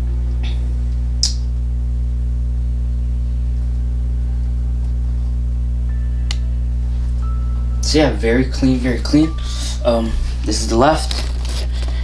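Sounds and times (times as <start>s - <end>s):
low electrical hum: 0.0s - 12.0s
sharp click: 1.2s - 1.5s.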